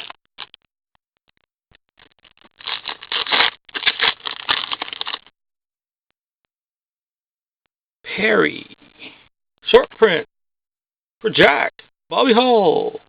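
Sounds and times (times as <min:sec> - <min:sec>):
card wrapper crinkling and scraping: 0:02.0 - 0:05.3.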